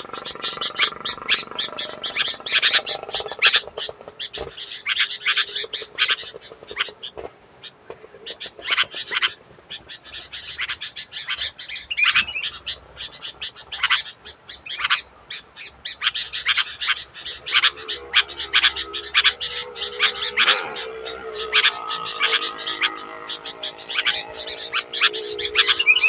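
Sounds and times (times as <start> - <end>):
bulbul chirping: 16.0 - 26.0.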